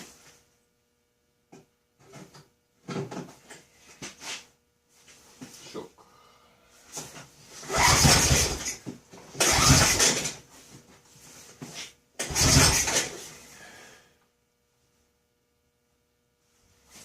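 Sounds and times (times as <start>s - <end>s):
engine cranking: 7.7s - 8.8s, 9.4s - 10.4s, 12.2s - 13.1s.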